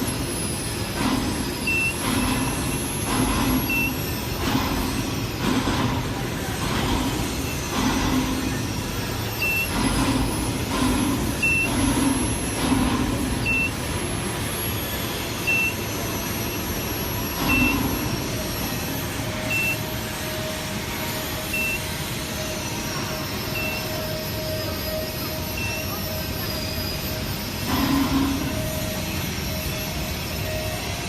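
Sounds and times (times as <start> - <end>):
steady mechanical rumble: 0.0 - 31.0
short high electronic beep: 15.4 - 18.0, 19.4 - 19.9, 21.4 - 21.9, 23.4 - 27.2.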